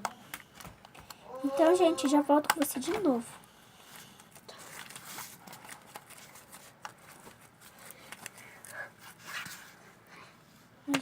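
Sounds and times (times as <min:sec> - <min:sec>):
small objects clicking and rustling: 0:02.0 - 0:03.1, 0:04.2 - 0:08.8.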